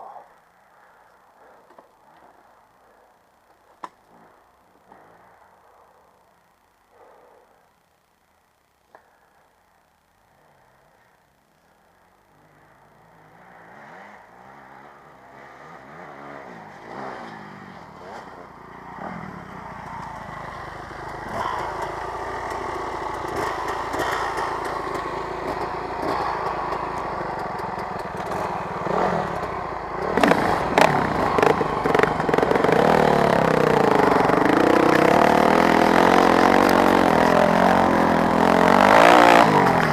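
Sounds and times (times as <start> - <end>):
dirt bike engine revving: 12.6 - 39.9.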